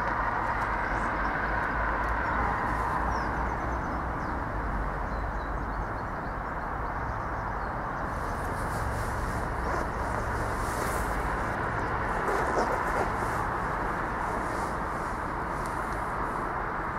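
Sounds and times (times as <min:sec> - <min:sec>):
train rumbling: 0:08.1 - 0:16.5.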